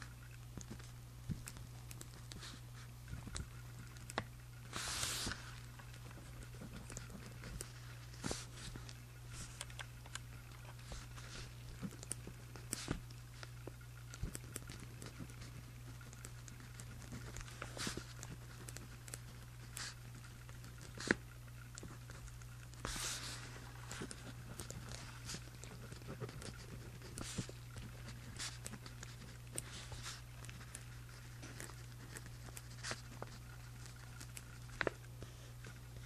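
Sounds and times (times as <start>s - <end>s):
steady low hum: 0.0s - 36.0s
paper rustle: 4.7s - 13.5s, 21.8s - 36.0s
pen scratching on paper: 22.8s - 34.1s.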